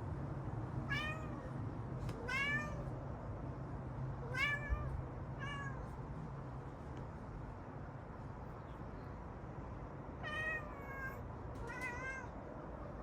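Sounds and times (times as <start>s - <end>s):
cat meowing: 0.9s - 1.5s, 2.2s - 2.9s, 4.2s - 5.9s, 10.2s - 12.4s.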